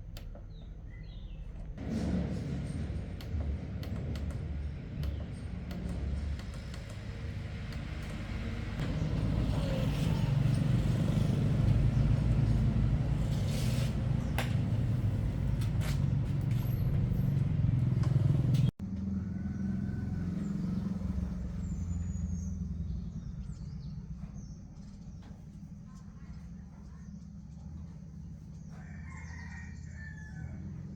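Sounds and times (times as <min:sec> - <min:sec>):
engine humming: 0:00.0 - 0:28.8
sharp clicks: 0:03.2 - 0:08.9.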